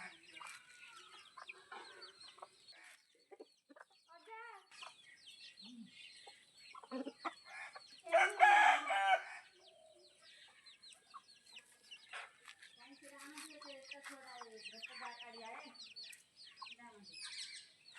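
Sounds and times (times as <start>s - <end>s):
chickens clucking: 0.0s - 17.9s
rooster crowing: 8.1s - 9.3s.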